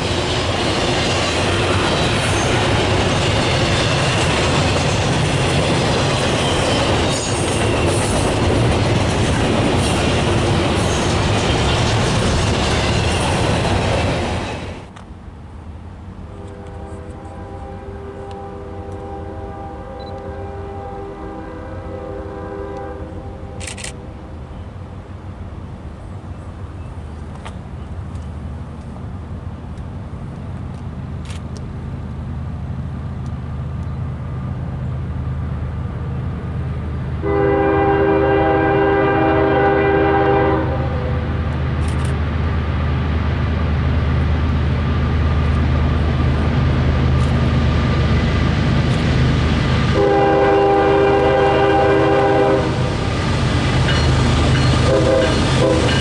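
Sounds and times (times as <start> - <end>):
train engine rumble: 0.0 - 56.0
train horn blasts: 16.3 - 24.1, 37.2 - 41.4, 49.9 - 52.9, 54.7 - 56.0.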